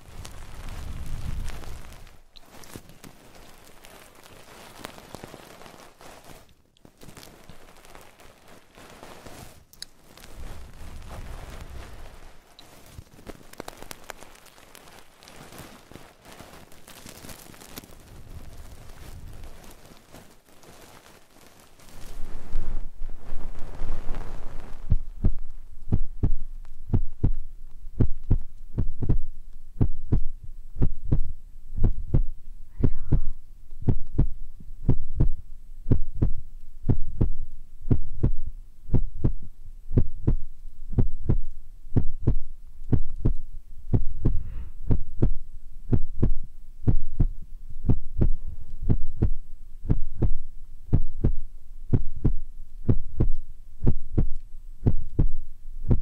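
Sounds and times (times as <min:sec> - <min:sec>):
soft low thumps: 0:21.9 - 0:56.0.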